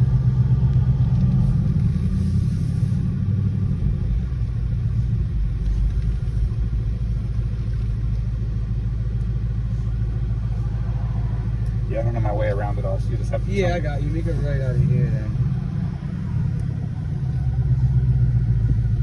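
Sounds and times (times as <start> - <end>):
car engine low rumble: 0.0 - 19.0
road noise: 0.0 - 19.0.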